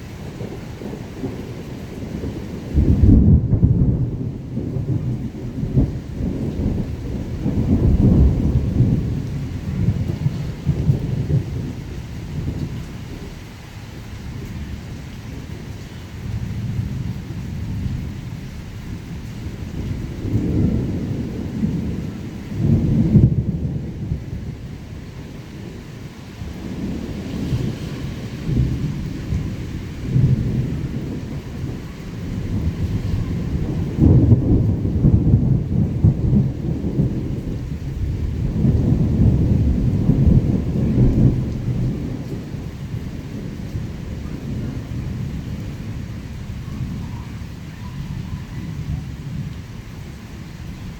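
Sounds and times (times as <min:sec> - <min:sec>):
steady rain: 0:00.0 - 0:50.9
thunder rumbling: 0:00.0 - 0:50.9.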